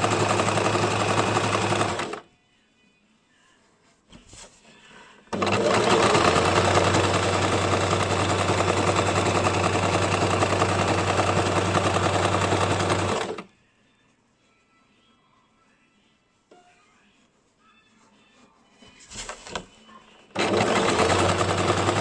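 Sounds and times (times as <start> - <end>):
sewing machine stitching: 0.0 - 2.2, 5.3 - 13.5, 20.3 - 22.0.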